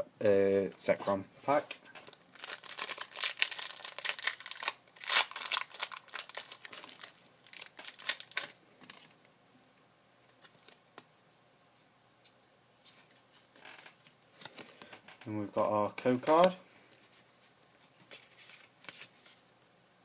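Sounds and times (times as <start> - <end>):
foil wrapper crinkling and tearing: 2.0 - 9.2.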